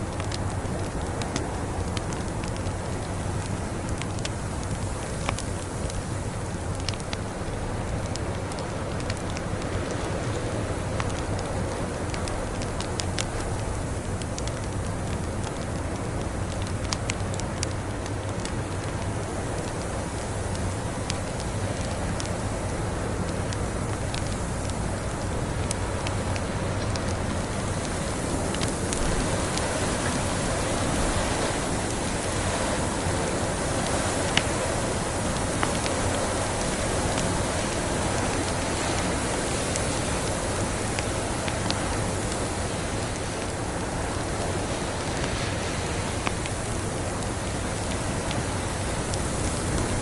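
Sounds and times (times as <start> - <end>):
wood fire crackling: 0.0 - 50.0
snowstorm rushing: 17.9 - 50.0.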